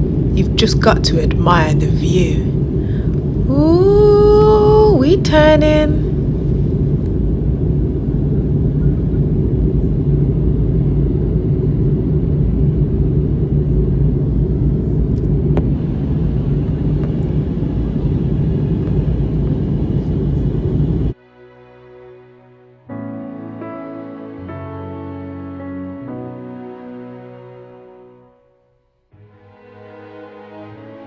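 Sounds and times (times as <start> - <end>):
jet engines rumbling in cabin: 0.0 - 21.2
low steady drone: 0.0 - 21.2.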